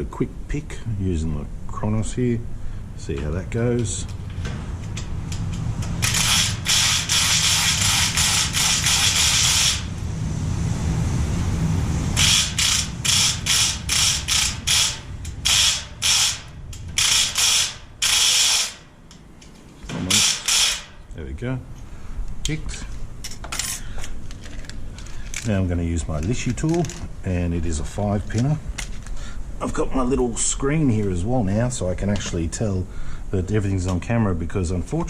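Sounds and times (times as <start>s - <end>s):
electric pick gun buzzing: 6.0s - 10.0s, 12.2s - 18.9s, 20.0s - 21.0s.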